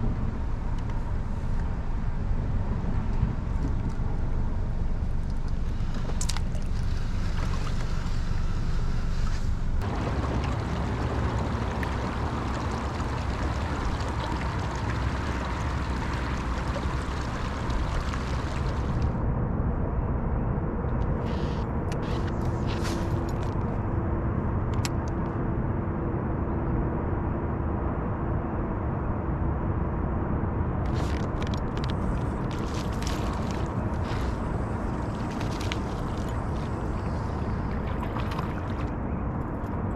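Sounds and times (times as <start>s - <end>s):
faint motor whine: 0.0s - 19.2s
rush of wind and water: 9.8s - 19.2s, 30.6s - 39.9s.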